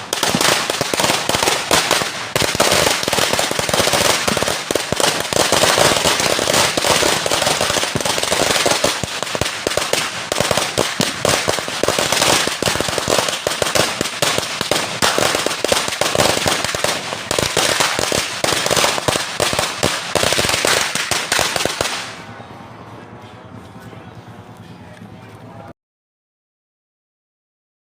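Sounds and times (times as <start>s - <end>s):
firecracker string going off: 0.0s - 22.3s.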